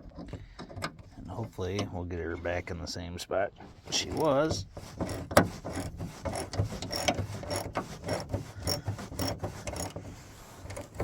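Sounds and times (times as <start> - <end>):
ratchet wrench clicking: 5.1 - 10.0.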